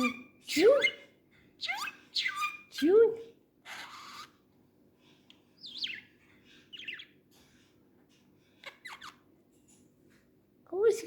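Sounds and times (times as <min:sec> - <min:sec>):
budgerigar chirping: 0:01.6 - 0:03.0, 0:03.7 - 0:04.4, 0:05.6 - 0:06.1, 0:06.7 - 0:07.2, 0:08.6 - 0:09.2.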